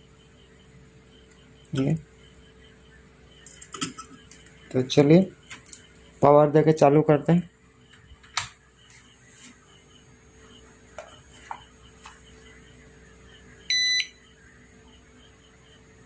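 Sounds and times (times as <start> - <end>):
faint steady hum: 0.0 - 16.0
short loud beep: 13.7 - 14.2.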